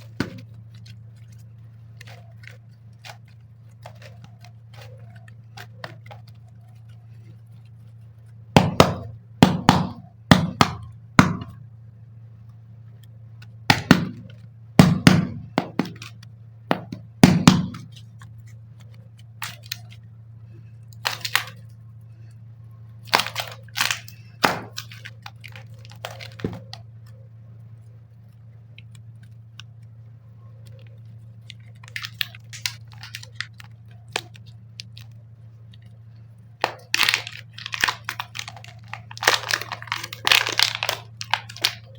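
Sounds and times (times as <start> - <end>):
packaging crinkling: 0.0 - 11.6, 13.0 - 41.9
clicks and taps of packaging: 23.1 - 26.9, 36.6 - 41.9.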